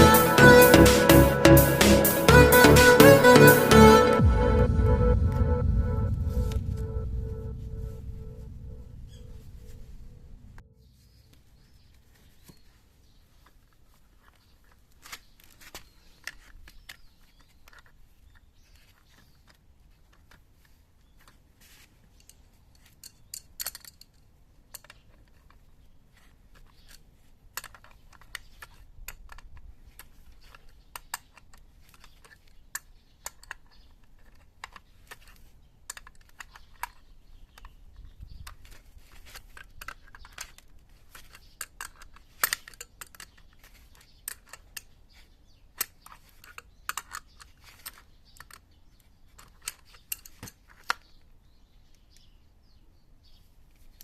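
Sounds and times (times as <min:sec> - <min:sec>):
hand tools clicking and tapping: 0:38.5 - 0:44.9.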